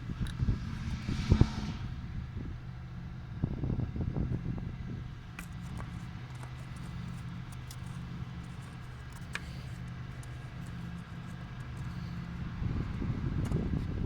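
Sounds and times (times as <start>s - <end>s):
low rumbling: 0.0s - 14.0s
car engine idling: 4.3s - 14.0s.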